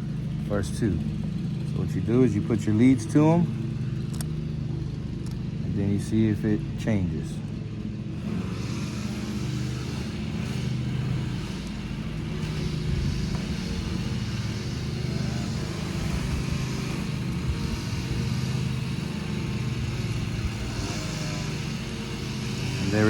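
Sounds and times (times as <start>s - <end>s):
truck engine idling: 0.0s - 23.0s.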